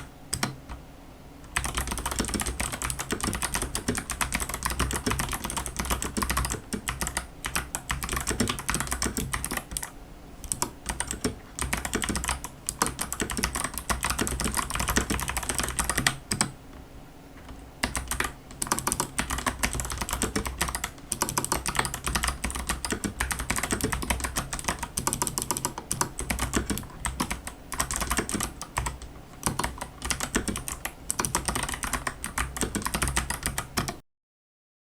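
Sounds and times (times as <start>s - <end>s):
fast mechanical keyboard typing: 0.3s - 0.8s, 1.5s - 16.5s, 17.8s - 34.0s.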